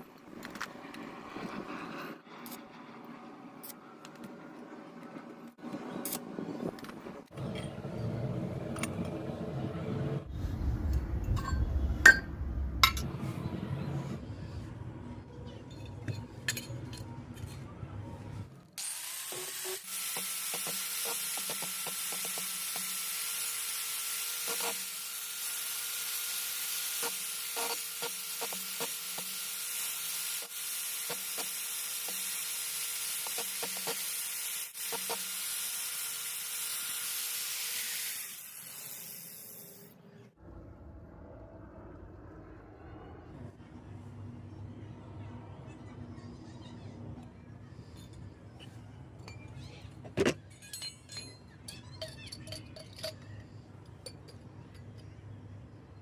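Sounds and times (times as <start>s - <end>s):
small power tool motor: 18.8s - 39.9s.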